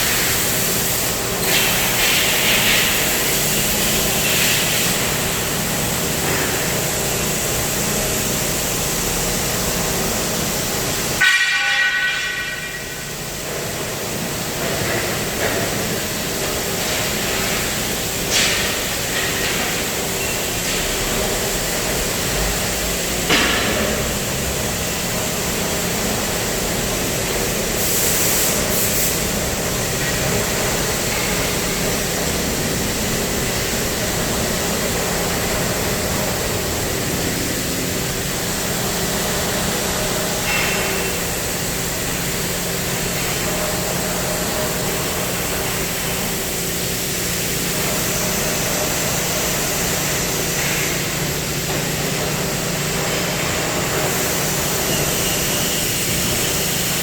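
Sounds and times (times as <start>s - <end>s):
plasma cutter hiss: 0.0s - 9.0s, 26.9s - 51.4s, 52.1s - 57.0s.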